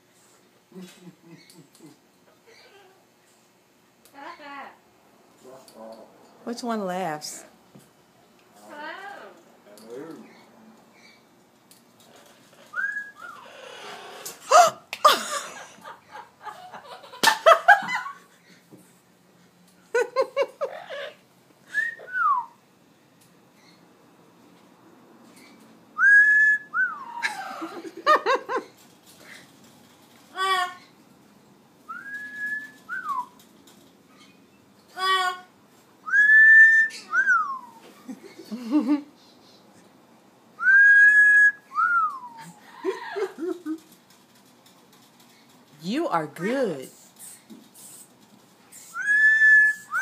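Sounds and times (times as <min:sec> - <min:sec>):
bird whistling: 0:12.7 - 0:13.5, 0:36.1 - 0:37.8, 0:48.8 - 0:50.0.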